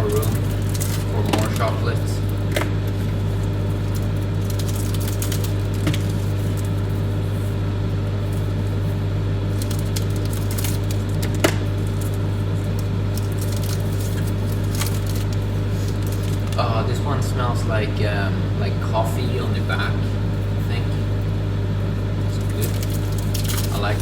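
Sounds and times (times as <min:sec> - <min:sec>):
microwave oven humming: 0:00.0 - 0:24.0.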